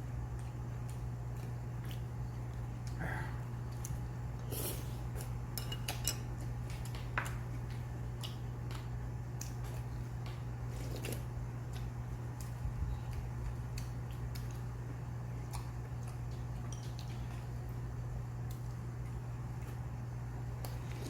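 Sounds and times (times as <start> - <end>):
soft eating noises: 0.0 - 21.0
steady low hum: 0.0 - 21.0
utensils clinking against dishes: 5.6 - 6.3.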